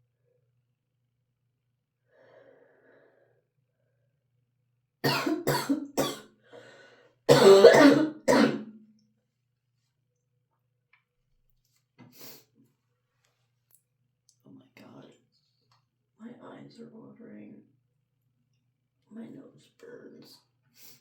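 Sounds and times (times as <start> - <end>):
person sneezing: 5.1 - 6.2, 7.3 - 8.7.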